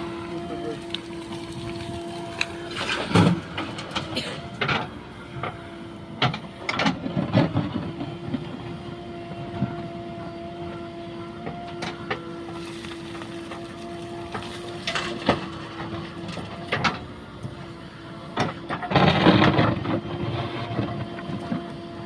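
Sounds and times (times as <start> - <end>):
heavy machinery whine: 0.0 - 22.0
metal clanks and knocks: 14.3 - 17.0.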